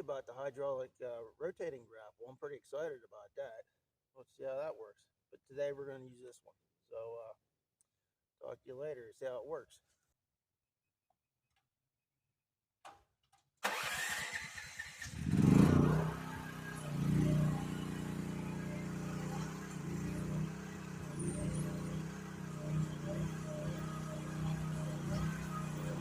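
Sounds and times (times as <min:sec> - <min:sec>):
excavator engine starting and running: 0:13.6 - 0:26.0.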